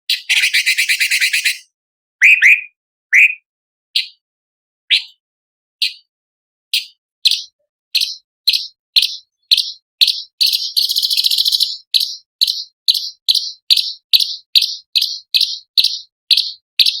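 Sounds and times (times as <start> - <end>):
bird trilling: 0.1 - 3.4, 7.3 - 17.0
bird singing sharp high notes: 0.1 - 3.5.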